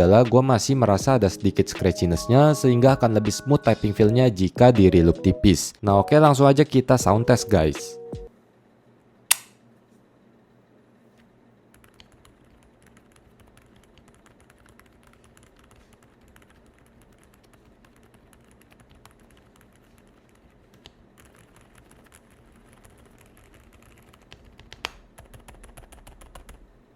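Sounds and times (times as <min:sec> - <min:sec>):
soft mechanical keyboard typing: 0:11.7 - 0:26.9.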